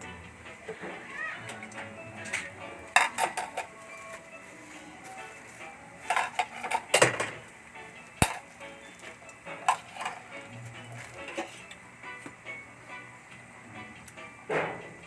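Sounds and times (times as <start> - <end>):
background music: 0.0 - 15.0
cutlery clinking on dishes: 1.5 - 4.2, 6.0 - 7.4, 8.2 - 8.5, 9.2 - 10.3, 11.0 - 11.8.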